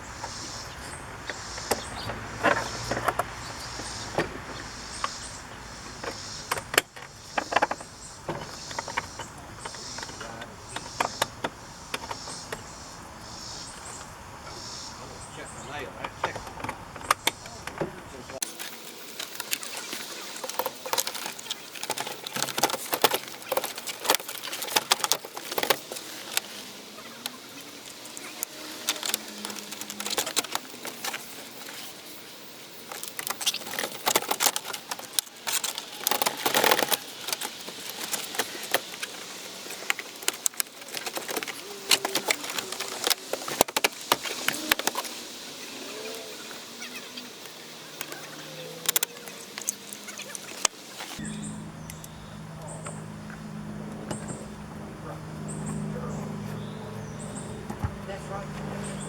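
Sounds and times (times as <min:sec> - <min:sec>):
plastic connectors clicking: 0:18.4 - 0:31.9, 0:32.8 - 0:45.2, 0:47.4 - 0:51.2.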